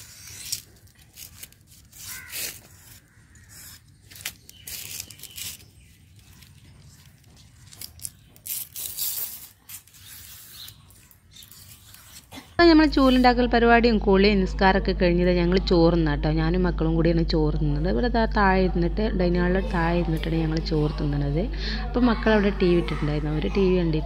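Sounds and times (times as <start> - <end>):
palm leaves tearing and scraping: 0.0 - 12.6.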